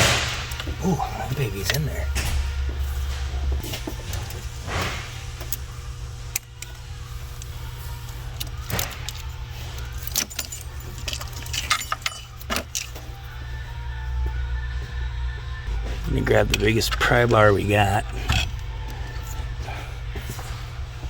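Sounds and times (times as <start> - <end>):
steady low hum: 0.0 - 21.0
metallic tool clicks and clinks: 8.4 - 13.0.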